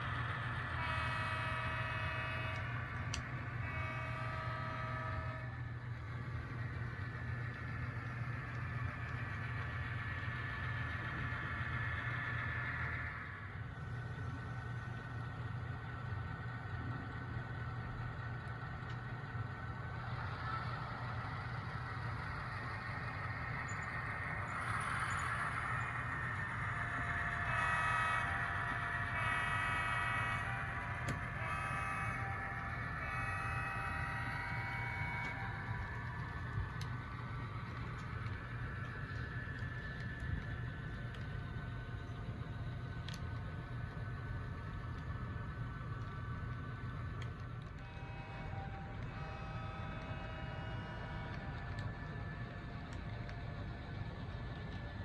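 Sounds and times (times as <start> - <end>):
diesel engine rumble: 0.0 - 55.0
faint high whine: 0.0 - 55.0
air horn blast: 0.7 - 3.0, 3.6 - 5.6, 27.4 - 35.6, 47.8 - 51.7.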